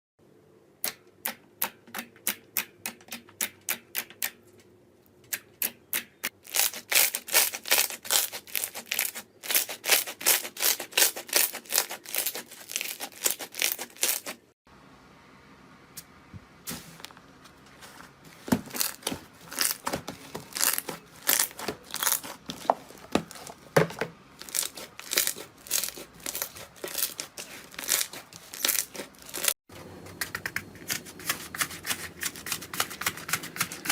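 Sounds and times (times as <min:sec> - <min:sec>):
slime popping and crackling: 0:18.7 - 0:22.6, 0:24.4 - 0:29.5.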